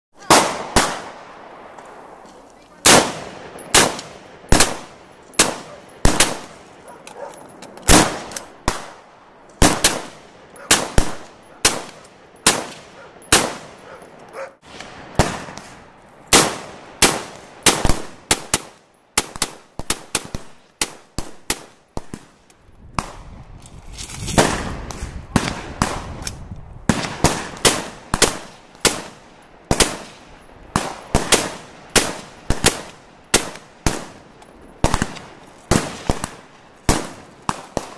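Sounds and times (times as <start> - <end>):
rifle shots: 0.2 - 1.3, 2.8 - 6.7, 7.8 - 9.0, 9.6 - 14.0, 14.7 - 22.4, 26.9 - 34.2, 34.8 - 37.9.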